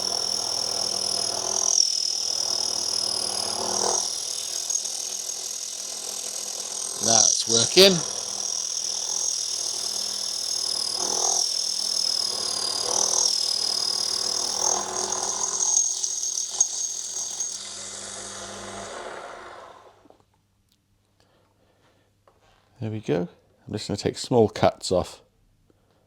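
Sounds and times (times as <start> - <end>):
lathe tool squealing on brass: 0.0 - 17.6
lathe motor humming: 0.0 - 20.0.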